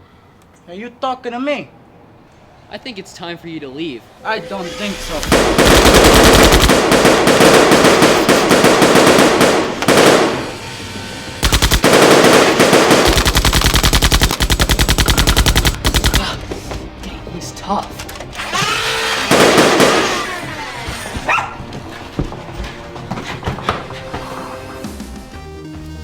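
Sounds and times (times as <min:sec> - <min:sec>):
rapid automatic gunfire: 0:05.3 - 0:10.8, 0:11.4 - 0:16.4, 0:19.2 - 0:20.2.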